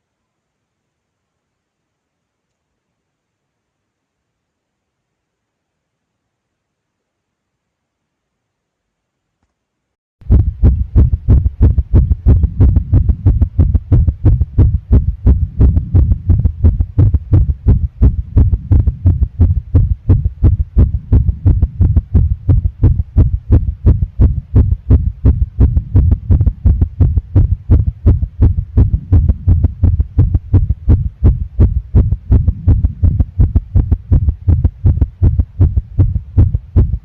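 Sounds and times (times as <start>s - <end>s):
heartbeat thumps: 10.2s - 37.0s.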